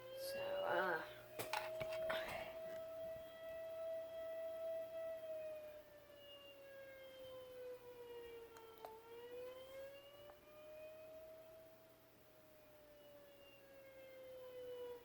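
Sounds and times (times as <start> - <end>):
faint warning siren wailing: 0.0 - 15.0.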